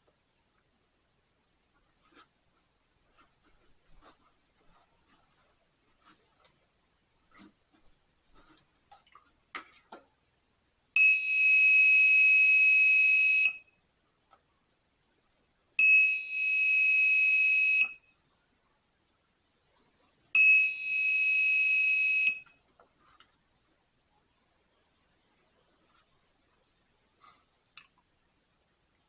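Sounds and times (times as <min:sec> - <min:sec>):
high-pitched buzzer beeps: 0:11.0 - 0:13.6, 0:15.8 - 0:18.0, 0:20.4 - 0:22.4.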